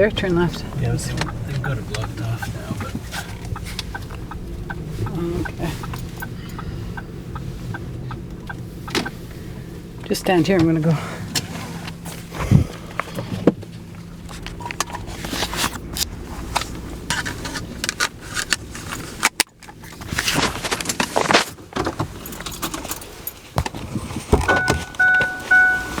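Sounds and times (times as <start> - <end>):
jangling and rattling: 5.6 - 7.0, 17.1 - 25.8
electronic beeping tone: 24.5 - 26.0.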